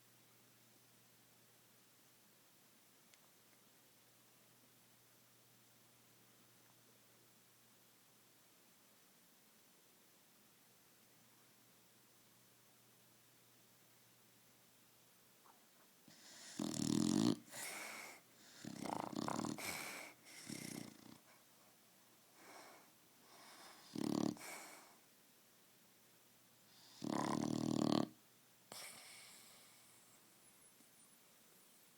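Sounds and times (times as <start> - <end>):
dog snoring: 16.1 - 21.4, 22.4 - 25.0, 26.7 - 30.1.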